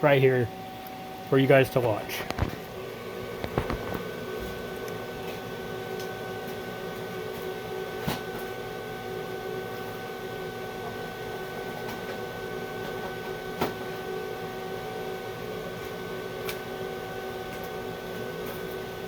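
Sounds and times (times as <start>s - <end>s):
welding arc buzzing crackle: 2.2s - 8.6s.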